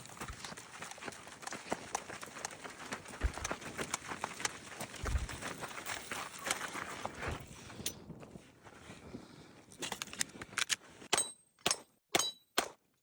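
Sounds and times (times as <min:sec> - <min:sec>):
rustling movement: 0:03.0 - 0:07.8.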